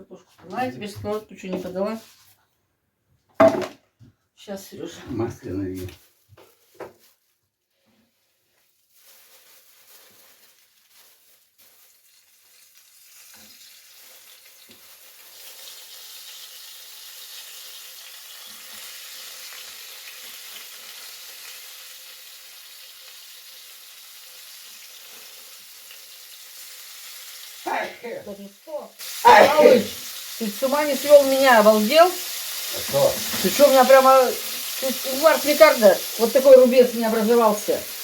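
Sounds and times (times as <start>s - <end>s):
fish frying in hot oil: 8.6s - 38.0s.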